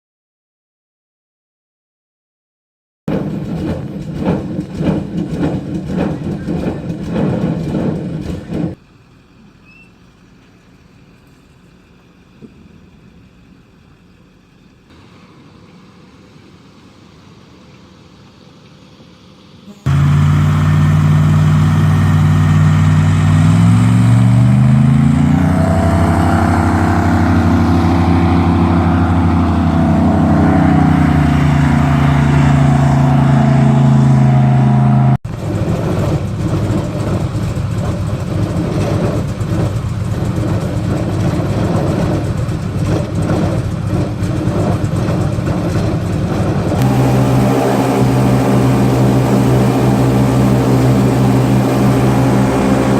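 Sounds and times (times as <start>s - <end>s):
airboat engine revving: 19.6s - 52.9s.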